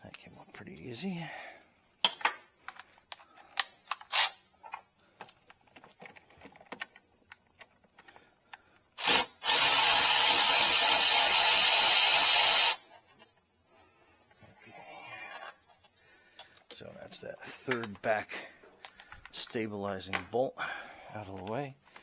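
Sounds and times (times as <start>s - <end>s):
socket and ratchet clinking: 3.5s - 4.5s, 9.0s - 12.8s
cordless ratchet spinning: 4.1s - 4.4s, 9.0s - 12.8s.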